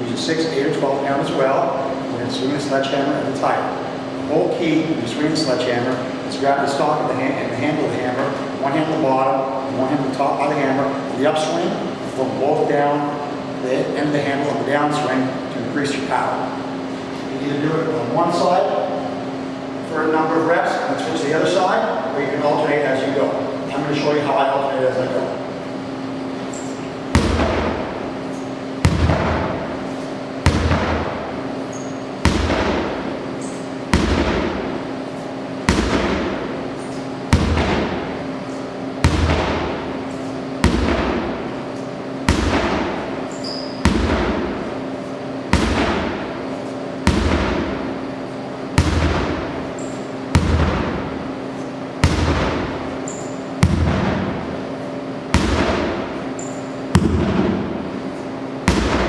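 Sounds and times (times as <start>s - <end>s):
sledgehammer striking tire: 27.1s - 28.0s, 28.9s - 29.7s, 30.5s - 33.1s, 34.0s - 34.8s, 35.7s - 36.6s, 37.4s - 38.2s, 39.0s - 39.9s, 40.6s - 41.5s, 42.3s - 44.6s, 45.6s - 46.3s, 47.1s - 47.9s, 48.8s - 49.6s, 50.4s - 51.2s, 52.0s - 54.5s, 55.4s - 57.8s, 58.7s - 59.0s.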